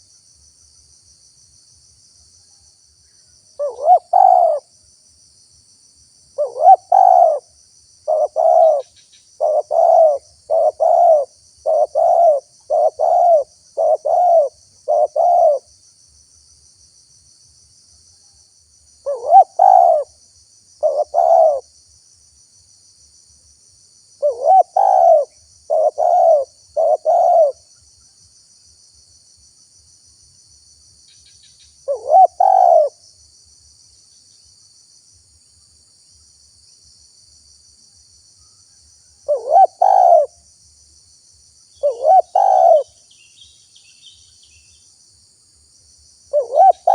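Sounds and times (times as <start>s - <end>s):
dove cooing: 3.6s - 4.7s, 6.4s - 15.7s, 19.0s - 20.1s, 20.8s - 21.7s, 24.2s - 27.6s, 31.9s - 33.0s, 39.2s - 40.4s, 41.8s - 43.0s, 46.3s - 46.9s.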